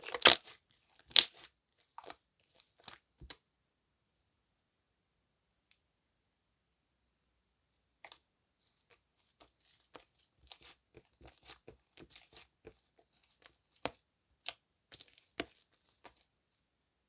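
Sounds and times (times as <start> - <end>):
gel squeezed crackling and popping: 0.0 - 1.4.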